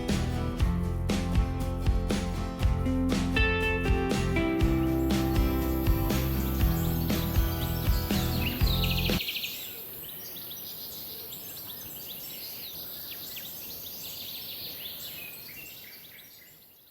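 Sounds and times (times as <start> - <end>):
background music: 0.0 - 9.2
birds chirping: 4.0 - 16.9.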